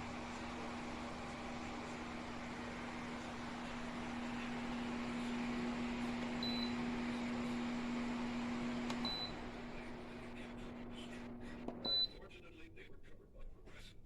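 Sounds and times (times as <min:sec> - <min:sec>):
fan hum and rushing air: 0:00.0 - 0:11.9
fan control beeps: 0:06.3 - 0:07.2, 0:08.9 - 0:09.4, 0:11.2 - 0:12.2.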